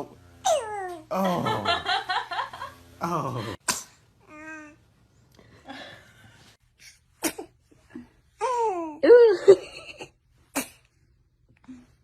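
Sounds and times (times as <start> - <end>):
baby sneezing: 3.6 - 4.1, 7.1 - 7.6, 10.5 - 10.9.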